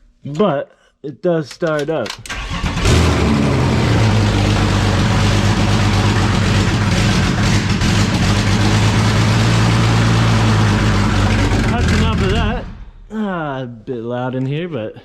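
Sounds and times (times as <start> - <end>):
car engine cranking and running: 2.1 - 12.9.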